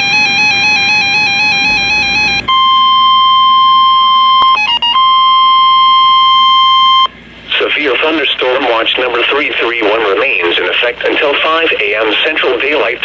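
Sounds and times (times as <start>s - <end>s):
warbling electronic alert tone: 0.0s - 7.1s
steady warning tone: 0.0s - 13.0s.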